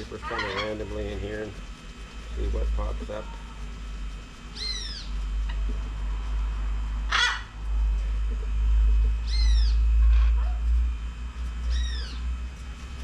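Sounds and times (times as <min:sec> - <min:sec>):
parrot calls: 0:00.2 - 0:00.7, 0:04.6 - 0:05.2, 0:07.1 - 0:07.5, 0:09.2 - 0:10.6, 0:11.7 - 0:12.2
parrot squawk: 0:00.2 - 0:00.7, 0:04.6 - 0:05.1, 0:07.1 - 0:07.5, 0:09.2 - 0:10.6, 0:11.7 - 0:12.2
low rumble: 0:02.2 - 0:12.6.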